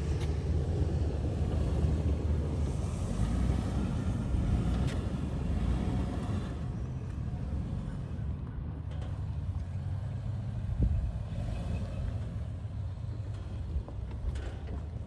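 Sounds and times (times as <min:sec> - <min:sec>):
vehicle engine rumble: 0:00.0 - 0:15.0
wind buffeting microphone: 0:10.5 - 0:12.4.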